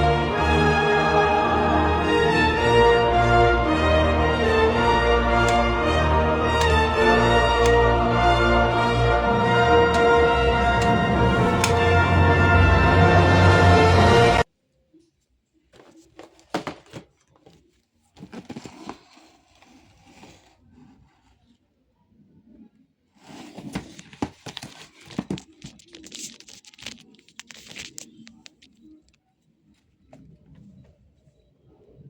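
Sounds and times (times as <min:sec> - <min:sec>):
packaging crinkling and tearing: 0:24.0 - 0:28.6.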